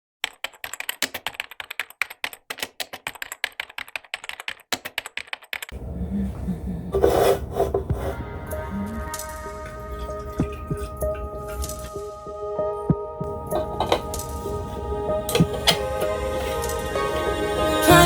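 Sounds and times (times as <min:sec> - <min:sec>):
typing on a computer keyboard: 0:00.2 - 0:05.7
low hum: 0:05.8 - 0:17.6
background music: 0:07.8 - 0:18.0.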